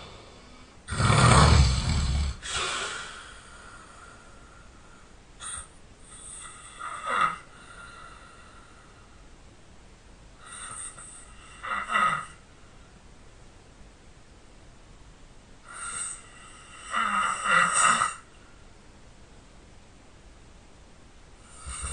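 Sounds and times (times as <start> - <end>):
person snoring loudly: 0.9 - 3.3, 21.5 - 21.9.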